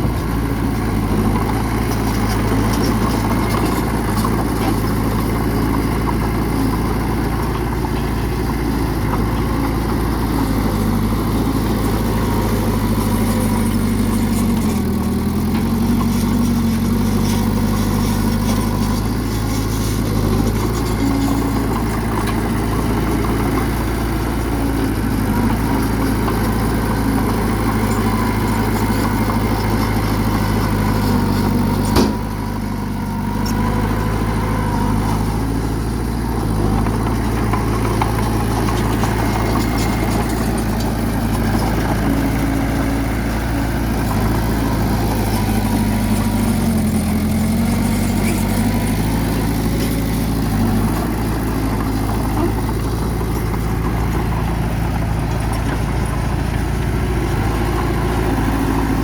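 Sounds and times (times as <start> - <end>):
bulldozer diesel engine running: 0.0 - 59.0.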